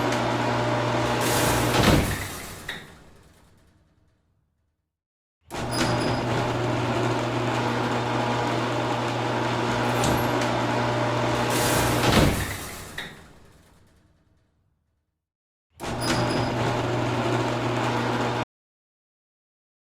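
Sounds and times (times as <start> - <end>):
garage door motor humming: 0.0 - 2.7, 5.6 - 13.0, 15.8 - 18.4
garage door clunk: 0.0 - 3.8, 5.5 - 14.1, 15.8 - 18.4.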